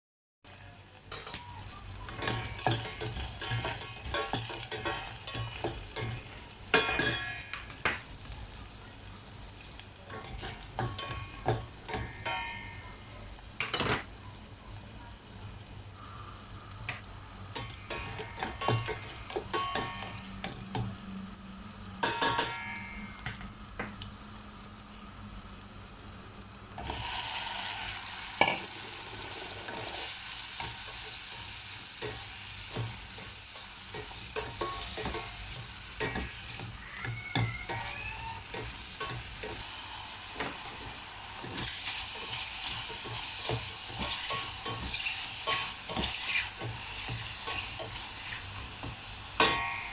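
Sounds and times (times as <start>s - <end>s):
food sizzling in butter: 0.5s - 49.9s
spatula scraping a pan: 2.2s - 7.4s, 40.4s - 48.7s.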